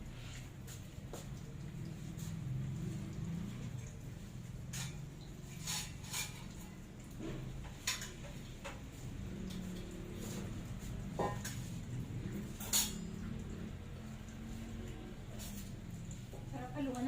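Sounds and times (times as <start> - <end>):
utensils clinking on dishes: 3.7 - 8.9, 10.8 - 13.7.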